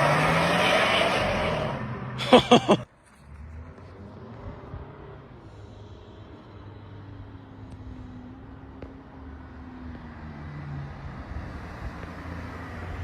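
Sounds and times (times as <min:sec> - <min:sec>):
car engine accelerating: 0:00.0 - 0:07.4
low road rumble: 0:00.0 - 0:13.0.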